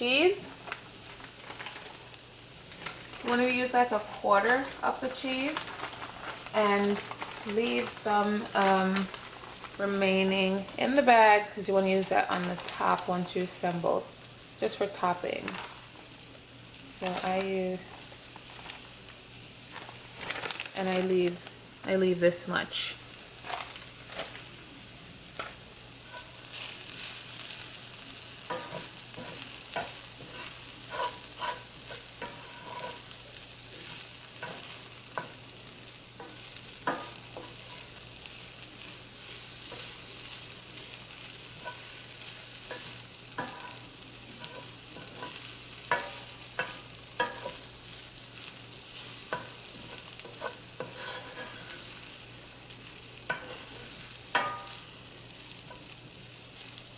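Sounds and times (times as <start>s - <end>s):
food sizzling in a frying pan: 0.0s - 56.9s
utensil scraping and tapping pan: 28.5s - 33.1s, 42.7s - 43.8s, 44.4s - 47.6s, 53.3s - 54.8s.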